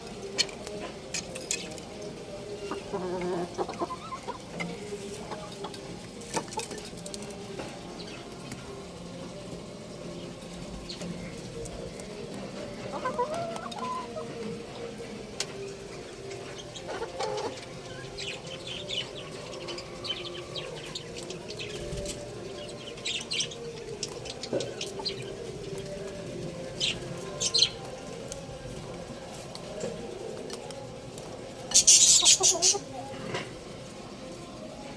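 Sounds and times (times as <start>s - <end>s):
young rooster chirping and clucking: 2.7s - 4.5s, 12.9s - 14.3s, 31.8s - 33.0s.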